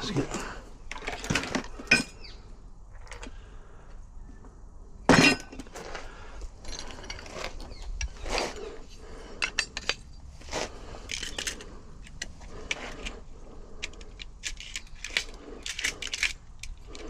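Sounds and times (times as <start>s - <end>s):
metal lock parts clinking: 9.4s - 10.2s, 10.9s - 17.0s.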